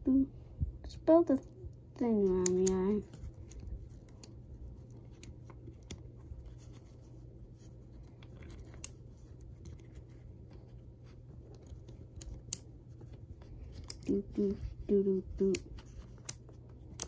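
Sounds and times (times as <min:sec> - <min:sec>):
faint steady hum: 0:00.0 - 0:17.0
magnetic blocks clicking together: 0:11.5 - 0:12.7, 0:15.3 - 0:17.0.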